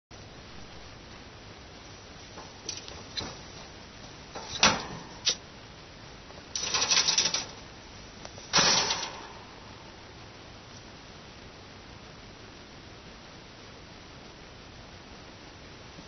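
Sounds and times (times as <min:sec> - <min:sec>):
rabbit grooming crackles: 0:00.6 - 0:10.0.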